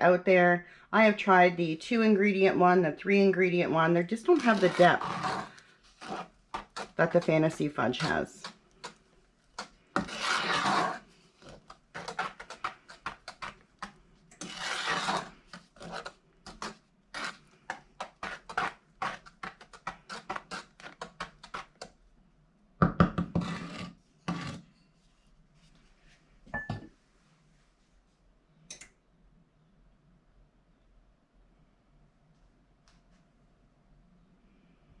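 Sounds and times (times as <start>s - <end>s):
spoon scraping a saucepan: 4.0s - 21.9s, 23.3s - 24.9s.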